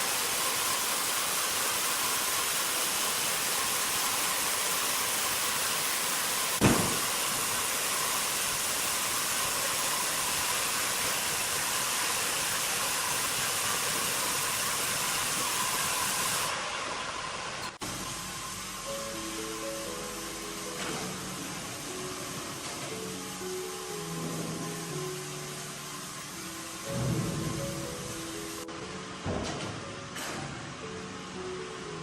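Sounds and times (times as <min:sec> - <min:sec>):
sawmill machinery hissing: 0:00.0 - 0:29.2
sharp thud: 0:06.6 - 0:07.1.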